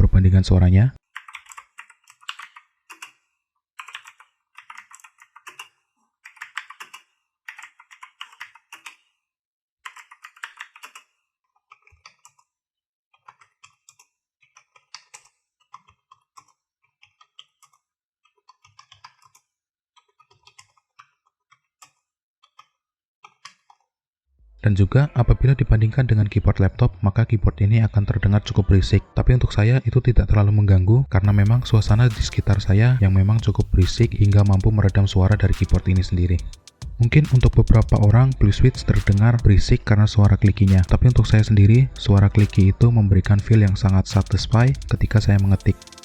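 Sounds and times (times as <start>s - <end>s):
membrane keyboard typing: 1.1s - 3.2s, 3.8s - 9.0s, 9.8s - 11.1s, 20.1s - 20.8s, 31.2s - 39.5s, 40.2s - 46.0s
clicky mechanical keyboard typing: 1.2s - 3.2s, 3.8s - 5.7s, 6.3s - 9.0s, 9.9s - 11.1s, 31.2s - 39.5s, 40.2s - 46.0s.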